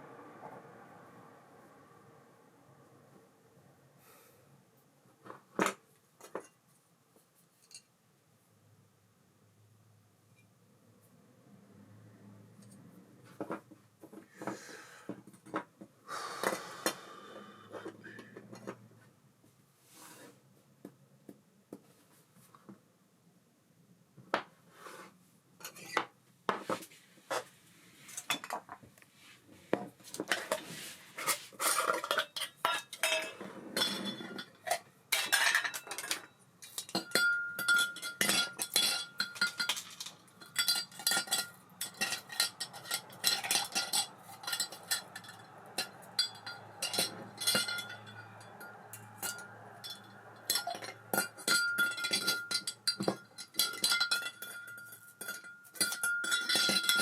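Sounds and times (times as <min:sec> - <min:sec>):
metal parts clinking and clicking: 0:31.6 - 0:57.0.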